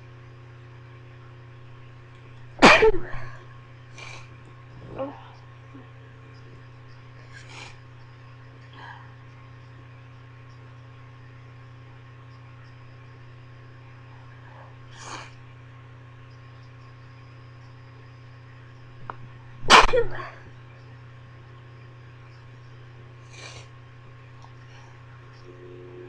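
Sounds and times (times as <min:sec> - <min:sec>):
low electrical hum: 0:00.0 - 0:26.0
stifled sneezes: 0:02.6 - 0:03.2, 0:19.7 - 0:20.4
faint short sniffs: 0:07.3 - 0:07.8, 0:23.3 - 0:23.7.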